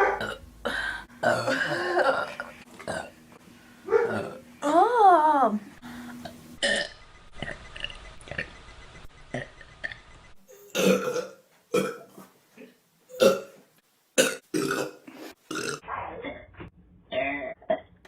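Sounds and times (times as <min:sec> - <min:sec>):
girl burping loudly: 0:00.2 - 0:03.1, 0:06.6 - 0:07.6, 0:10.5 - 0:12.1, 0:13.1 - 0:13.6, 0:14.2 - 0:16.4, 0:17.1 - 0:17.9.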